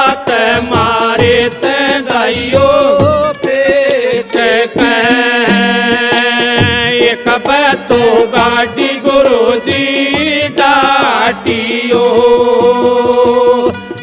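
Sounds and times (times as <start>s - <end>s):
drum beat: 0.0s - 14.0s.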